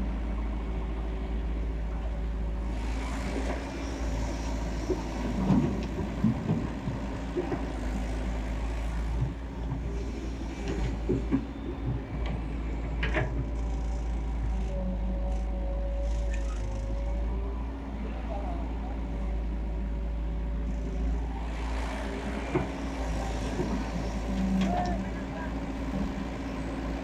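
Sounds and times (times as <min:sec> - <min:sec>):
diesel engine running: 0:00.0 - 0:27.0
machine knocks and clanks: 0:04.8 - 0:08.2, 0:09.0 - 0:14.0.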